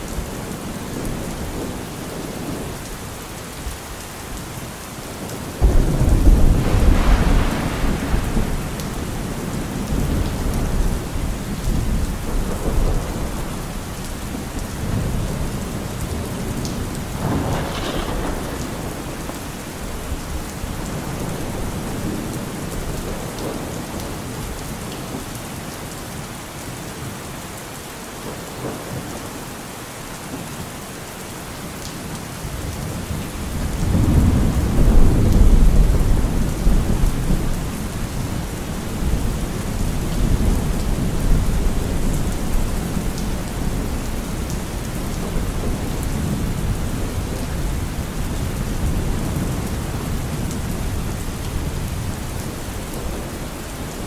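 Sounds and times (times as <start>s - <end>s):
steady rain falling: 0.0s - 54.0s
thunder rumbling: 5.2s - 24.5s, 33.1s - 54.0s.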